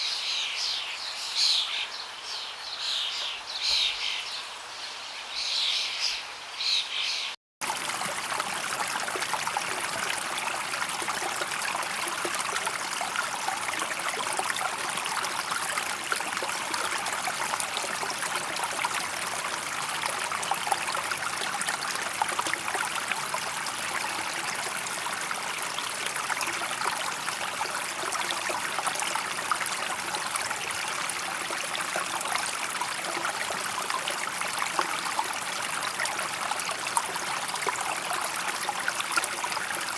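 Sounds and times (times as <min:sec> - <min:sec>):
birds singing: 0:00.0 - 0:07.4
stream babbling: 0:07.6 - 0:39.9.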